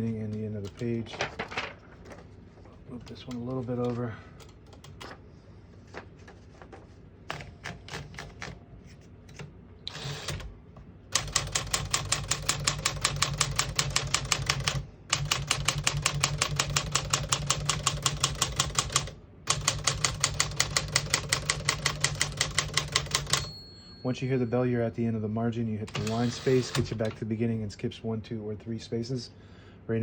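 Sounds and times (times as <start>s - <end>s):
typewriter keys striking: 7.3s - 8.6s, 11.2s - 23.5s, 25.9s - 27.2s
typewriter mechanism rasp: 9.9s - 10.5s, 11.2s - 23.5s, 25.9s - 27.2s.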